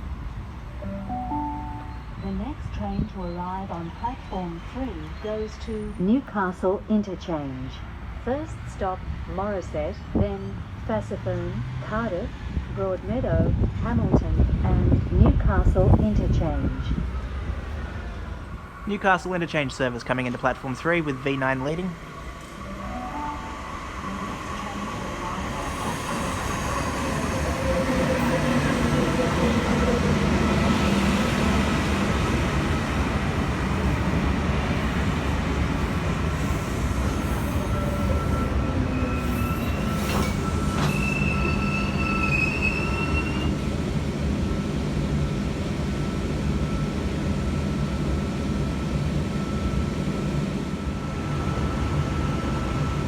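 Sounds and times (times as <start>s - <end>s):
train cars rolling in: 8.0s - 53.0s
wheel and brake squeals: 37.0s - 43.6s.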